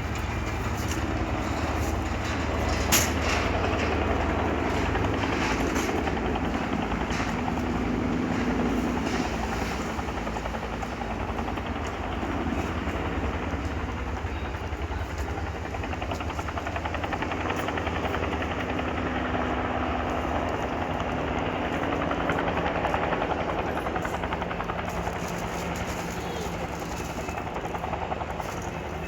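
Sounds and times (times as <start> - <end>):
helicopter engine hum: 0.0 - 29.0
helicopter rotor chopping: 0.0 - 29.0.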